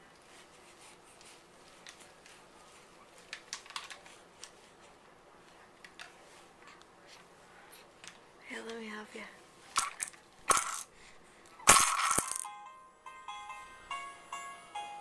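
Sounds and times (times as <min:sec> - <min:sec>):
plastic toys clicking and tapping: 0:03.3 - 0:04.5, 0:11.7 - 0:12.5.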